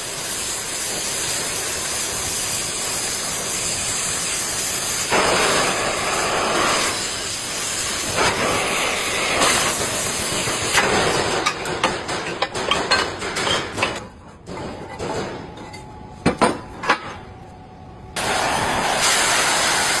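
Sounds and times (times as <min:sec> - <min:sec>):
welding arc crackling: 0:00.0 - 0:13.8, 0:18.2 - 0:20.0.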